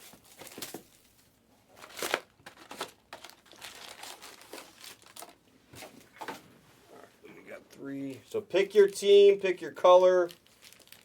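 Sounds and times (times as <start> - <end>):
plastic packaging crinkling: 0.0 - 5.4, 8.6 - 11.0.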